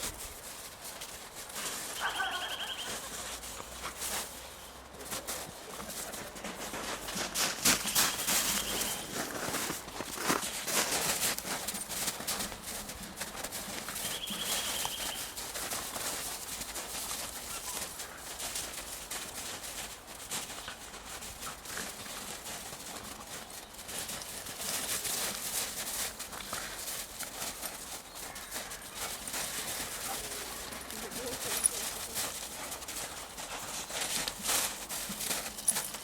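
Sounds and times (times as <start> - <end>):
footsteps on forest floor: 0.0 - 36.0
rapid bird trill: 2.0 - 3.0, 7.8 - 9.1, 14.0 - 15.4.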